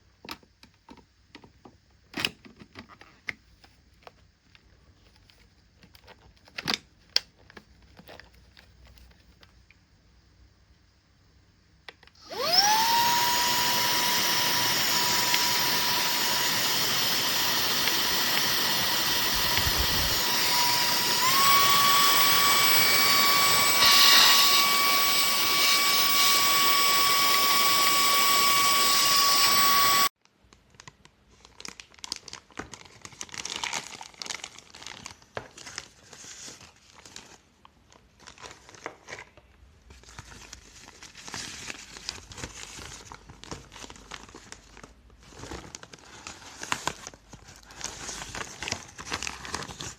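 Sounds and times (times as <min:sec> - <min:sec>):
handheld vacuum cleaner motor whine: 0:12.2 - 0:30.1.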